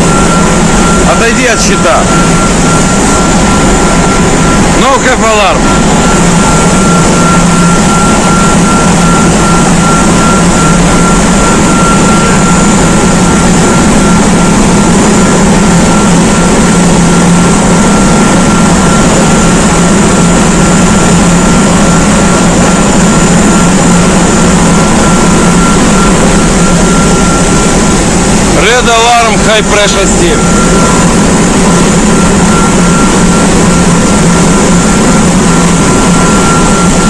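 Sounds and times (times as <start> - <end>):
engine-room machinery running: 0.0 - 37.0.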